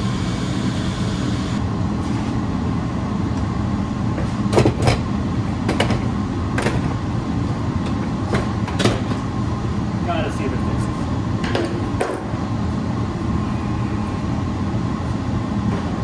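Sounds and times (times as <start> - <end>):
low machine hum: 0.0 - 16.0.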